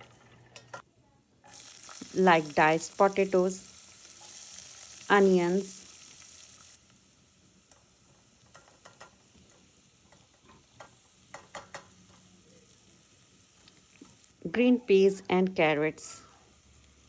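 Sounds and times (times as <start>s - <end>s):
vegetables sizzling in oil: 0.0s - 17.0s.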